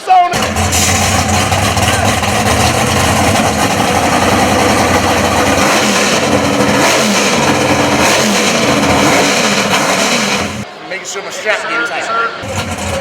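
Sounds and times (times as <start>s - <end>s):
race car engine revving: 0.3s - 10.7s, 12.4s - 13.0s.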